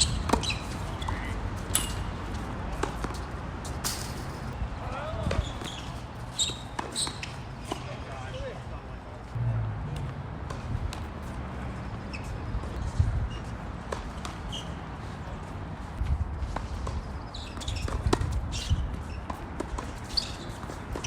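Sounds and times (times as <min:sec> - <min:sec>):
wind buffeting microphone: 0:12.4 - 0:13.5, 0:16.0 - 0:19.0.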